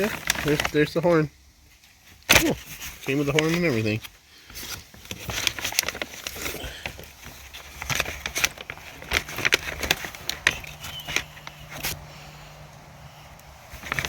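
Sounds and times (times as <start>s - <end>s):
plastic parts clicking and rattling: 0.0s - 0.9s, 2.3s - 12.0s, 13.7s - 14.0s
packaging crinkling: 0.0s - 12.1s, 13.6s - 14.0s.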